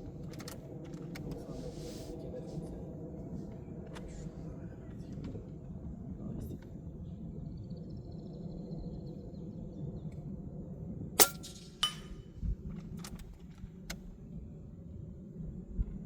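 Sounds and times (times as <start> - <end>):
air rifle shot: 11.2 - 12.2.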